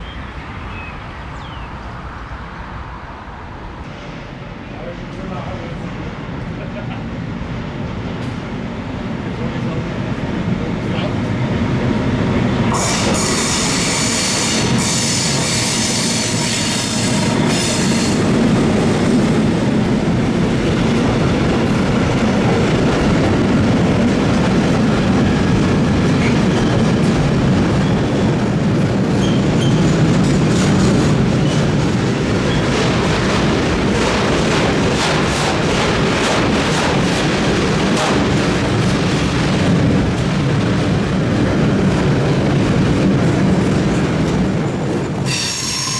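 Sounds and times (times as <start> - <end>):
train rumble: 0.0 - 45.9
high wheel squeal: 27.8 - 30.4, 43.8 - 45.9.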